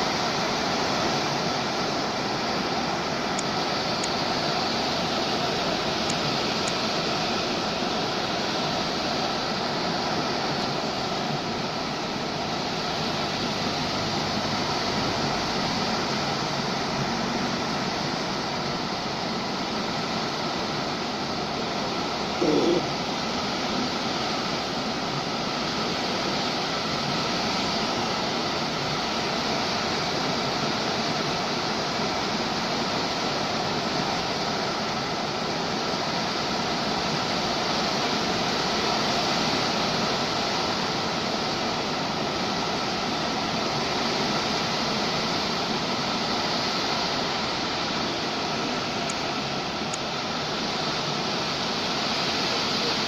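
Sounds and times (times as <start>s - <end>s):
storm wind and rain: 0.0s - 53.0s.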